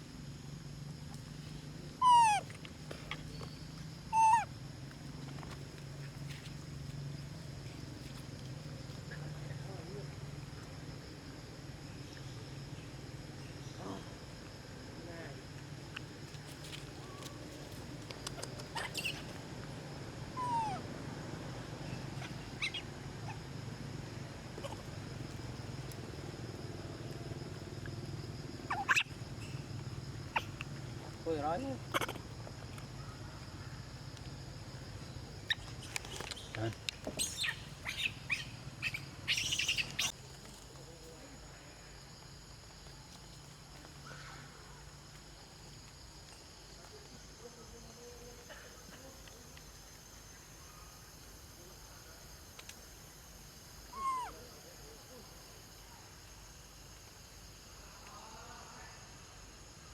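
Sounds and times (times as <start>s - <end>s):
monkey giving high calls: 2.0s - 2.5s, 4.1s - 4.5s, 18.3s - 19.3s, 20.4s - 20.9s, 21.9s - 23.4s, 24.6s - 24.9s, 28.6s - 29.6s, 30.2s - 30.8s, 31.8s - 32.4s, 37.2s - 40.1s, 53.8s - 54.4s.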